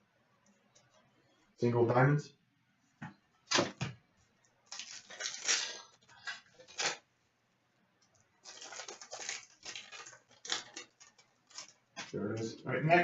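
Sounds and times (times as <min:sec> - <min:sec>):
wrapper crinkling: 0:04.7 - 0:07.0, 0:08.4 - 0:12.2.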